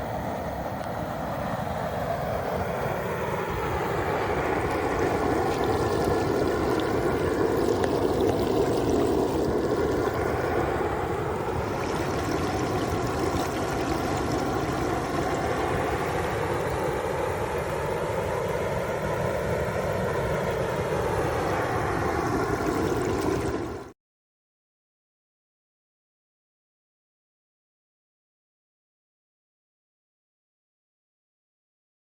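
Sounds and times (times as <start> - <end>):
oil boiling and bubbling: 0.8 - 23.9.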